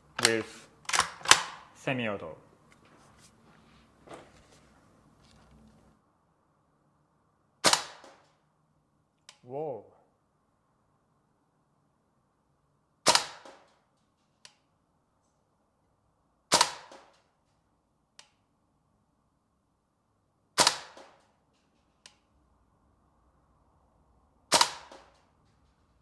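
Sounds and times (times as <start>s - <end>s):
airsoft rifle shots: 0.2s - 1.7s, 7.6s - 8.4s, 13.0s - 13.8s, 16.5s - 17.3s, 20.6s - 21.4s, 24.5s - 25.3s.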